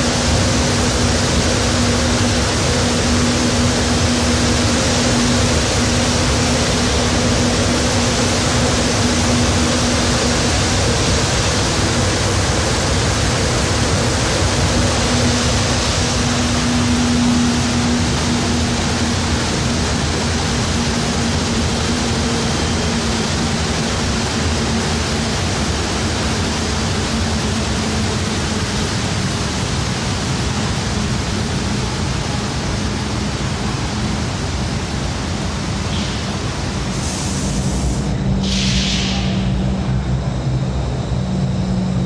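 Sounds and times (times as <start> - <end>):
loud rush of air: 0.0 - 42.0
low hum: 0.0 - 42.0
short hisses: 37.0 - 39.5.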